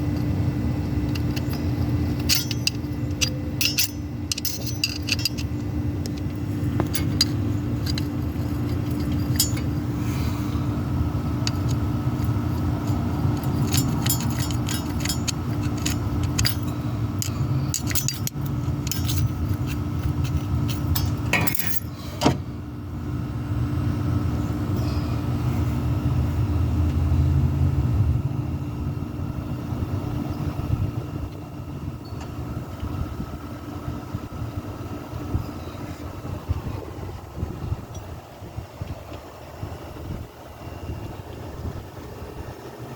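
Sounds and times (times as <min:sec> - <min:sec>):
diesel engine running: 0:00.0 - 0:42.9
sharp metallic clicks: 0:01.1 - 0:09.8, 0:11.4 - 0:21.8.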